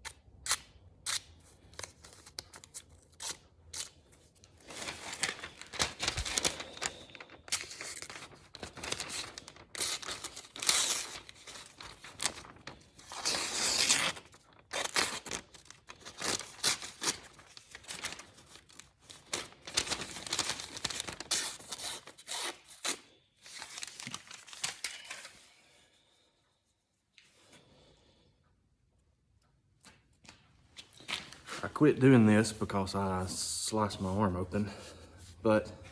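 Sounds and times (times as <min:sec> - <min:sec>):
paper crinkling: 0:01.6 - 0:25.5
knife slicing paper: 0:04.6 - 0:18.7, 0:19.3 - 0:25.3.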